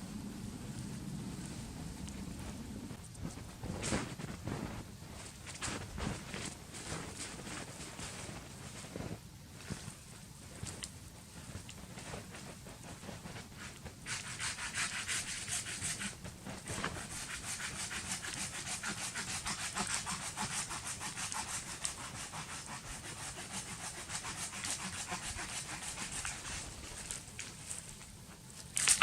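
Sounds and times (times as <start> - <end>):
pull saw cutting through wood: 17.3 - 26.4.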